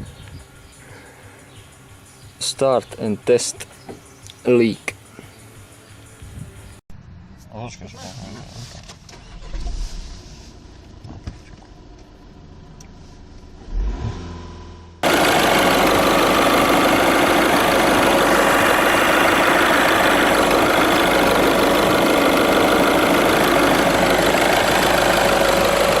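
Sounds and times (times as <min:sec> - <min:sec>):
car engine idling: 0:15.0 - 0:26.0.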